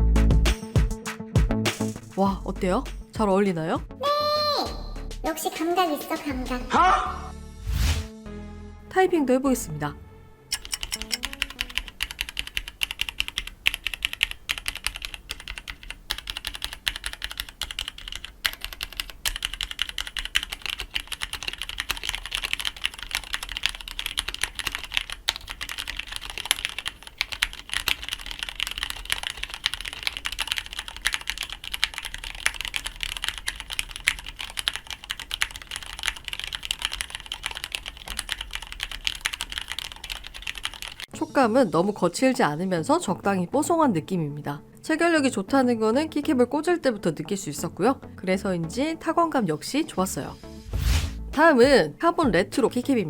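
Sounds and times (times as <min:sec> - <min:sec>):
fast typing on mechanical keyboard: 0:10.6 - 0:41.1.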